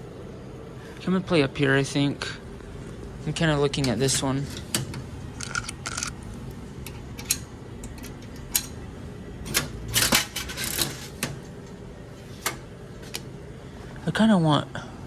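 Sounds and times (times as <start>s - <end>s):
coins clicking in vending machine: 4.4s - 6.2s, 6.8s - 8.8s, 9.4s - 11.8s.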